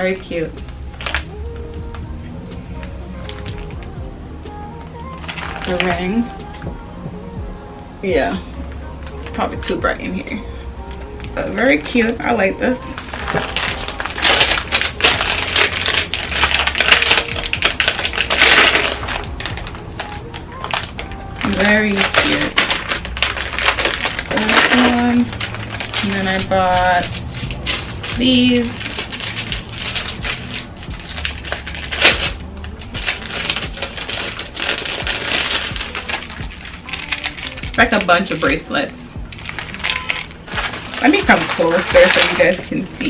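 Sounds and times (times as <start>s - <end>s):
plastic packaging crinkling: 0.6s - 2.1s, 2.8s - 7.3s, 8.6s - 43.0s
bracelets clicking and rustling: 12.8s - 42.7s.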